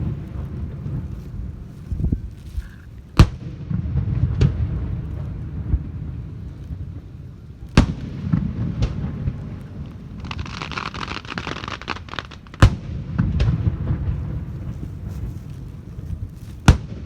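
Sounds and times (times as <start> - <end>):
fireworks bangs: 0.0 - 2.4, 3.1 - 17.0
low rumble: 0.0 - 10.2, 13.0 - 17.0
fireworks crackling: 0.0 - 17.0.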